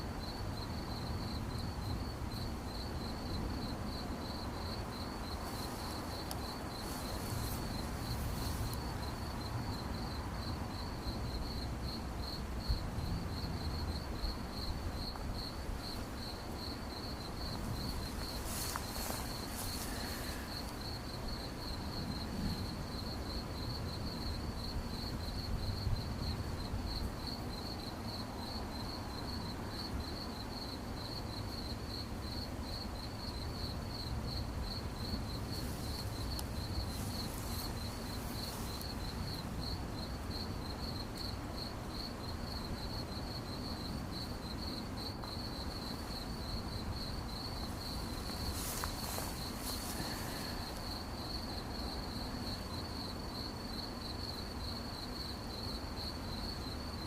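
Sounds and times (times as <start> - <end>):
cricket chirping: 0.0 - 57.0
soft hisses: 5.4 - 9.2, 17.9 - 20.8, 35.4 - 39.2, 47.7 - 50.9.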